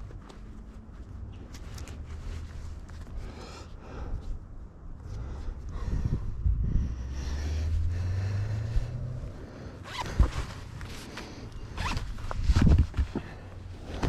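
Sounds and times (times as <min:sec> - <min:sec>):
fabric and straps rustling: 0:00.0 - 0:03.5, 0:07.6 - 0:14.0
steady low hum: 0:00.0 - 0:14.0
zipper being pulled: 0:09.8 - 0:10.6, 0:11.2 - 0:12.7.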